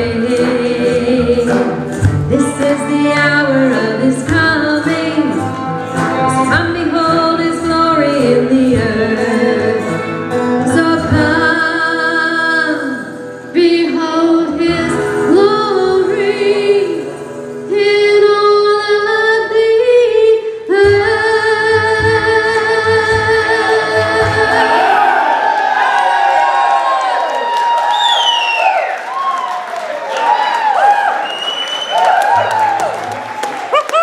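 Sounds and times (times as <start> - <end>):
instrumental accompaniment: 0.0 - 19.7.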